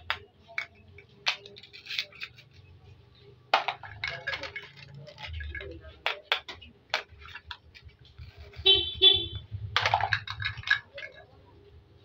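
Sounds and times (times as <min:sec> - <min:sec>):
plastic toy pieces clicking: 0:00.0 - 0:02.6, 0:03.6 - 0:08.4, 0:09.8 - 0:11.4.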